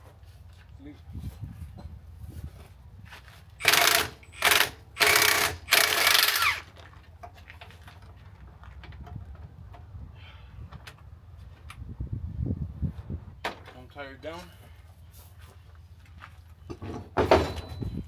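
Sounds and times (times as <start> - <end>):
impact wrench bursts: 3.6 - 6.7.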